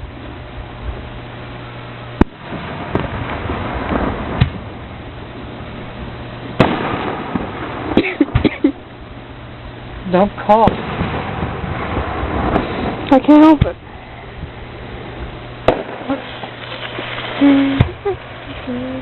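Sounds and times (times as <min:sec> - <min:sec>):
steady low hum: 0:00.0 - 0:19.0
fireworks bursting with sharp bangs: 0:02.2 - 0:09.8, 0:10.5 - 0:19.0.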